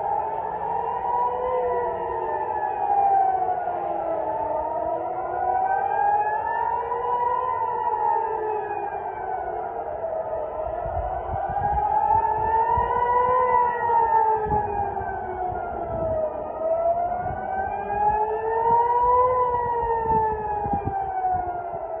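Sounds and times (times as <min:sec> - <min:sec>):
air-raid siren wailing: 0:00.0 - 0:22.0.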